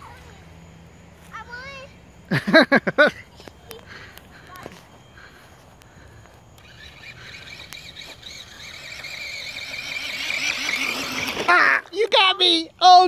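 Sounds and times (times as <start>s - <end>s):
radio-controlled car motor whine: 6.6s - 11.6s.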